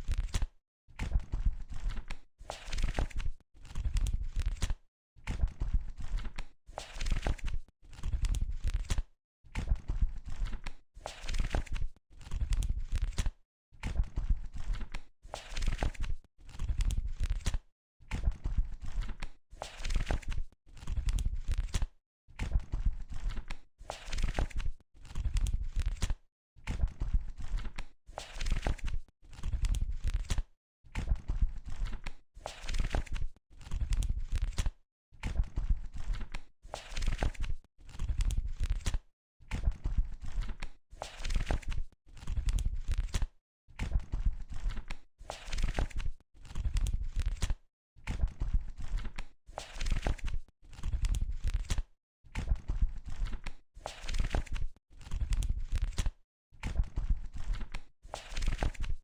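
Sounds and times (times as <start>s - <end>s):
book pages flipping: 1.8s - 4.8s, 6.1s - 9.0s, 10.3s - 13.3s, 14.6s - 17.6s, 18.8s - 21.9s, 23.2s - 26.2s, 27.4s - 30.4s, 31.6s - 34.7s, 35.9s - 39.0s, 40.2s - 43.3s, 44.5s - 47.6s, 48.8s - 51.9s, 53.0s - 56.2s, 57.0s - 59.0s.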